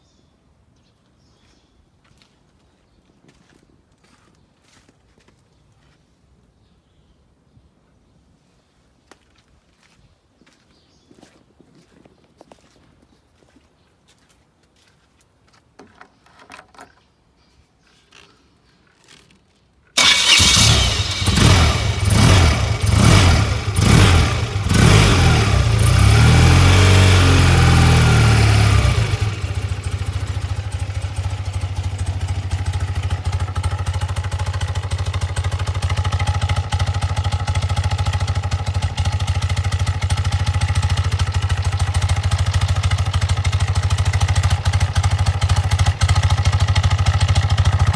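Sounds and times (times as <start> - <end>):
motorcycle engine revving and idling: 20.0 - 47.9.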